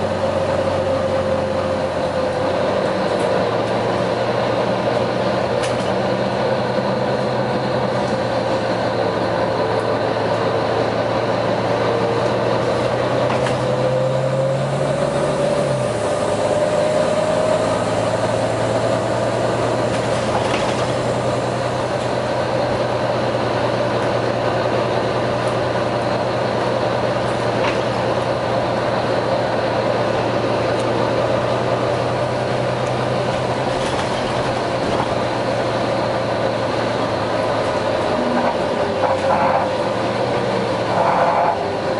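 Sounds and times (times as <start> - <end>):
diesel bus engine running: 0.0 - 41.9
rising whine: 6.1 - 23.8, 34.8 - 41.0.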